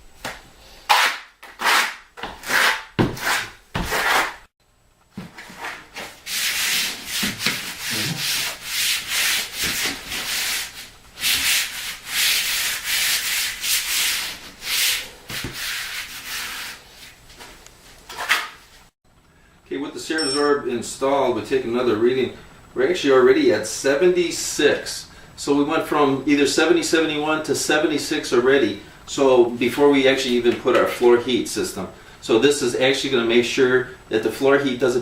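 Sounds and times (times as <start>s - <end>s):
trowel scraping mortar on concrete: 0.9s - 4.4s.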